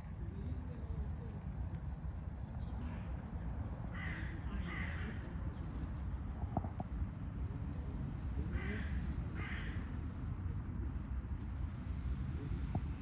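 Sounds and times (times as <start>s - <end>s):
crow cawing: 4.0s - 5.2s, 8.6s - 9.8s.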